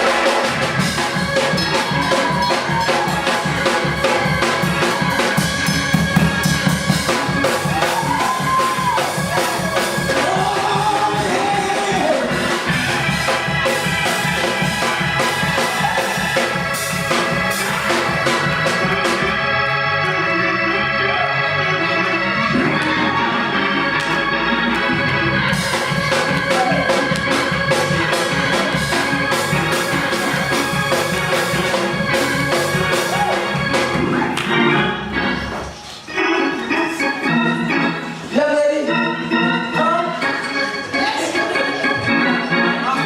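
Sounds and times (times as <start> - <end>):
percussion strikes: 0.0 - 20.2, 22.4 - 35.8
organ holding sustained chords: 0.0 - 43.0.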